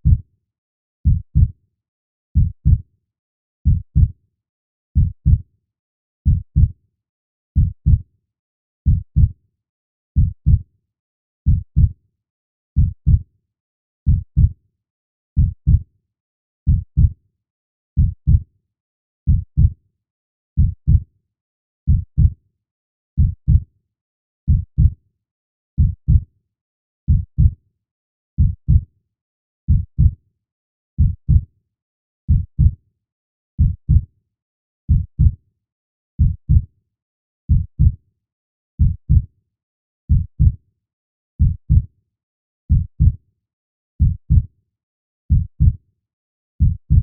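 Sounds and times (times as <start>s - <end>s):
heartbeat double thump: 46.6s - 47.0s.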